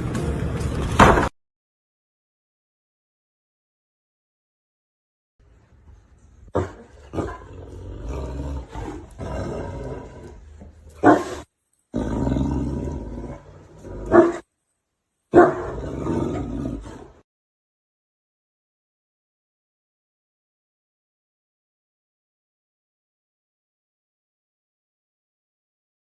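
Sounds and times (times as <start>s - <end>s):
animal growling: 6.5s - 14.5s, 15.4s - 17.2s.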